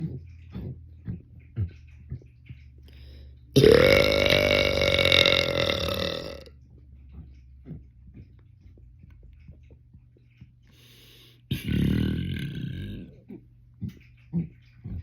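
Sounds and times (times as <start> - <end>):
man burping: 3.6 - 6.5, 11.5 - 13.2.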